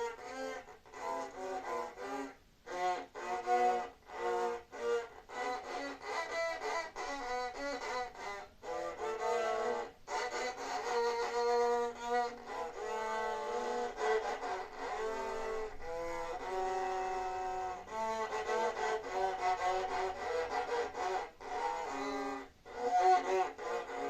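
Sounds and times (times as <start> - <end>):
violin melody with vibrato: 0.0 - 24.0.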